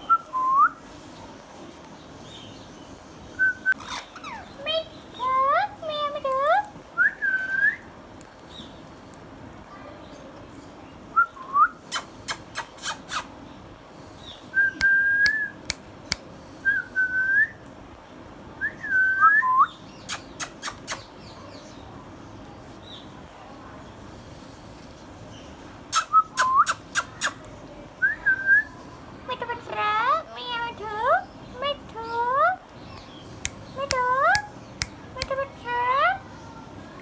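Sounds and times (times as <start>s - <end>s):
parrot whistling: 25.9s - 27.4s.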